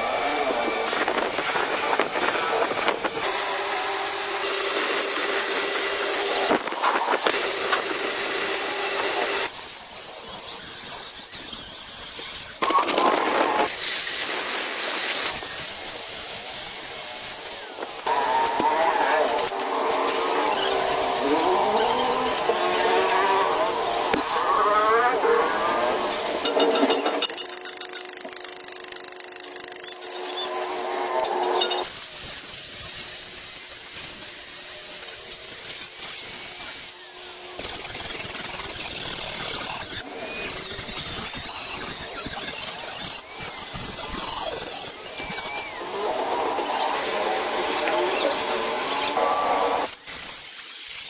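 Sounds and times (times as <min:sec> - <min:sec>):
workshop tools hissing: 0:00.0 - 0:51.0.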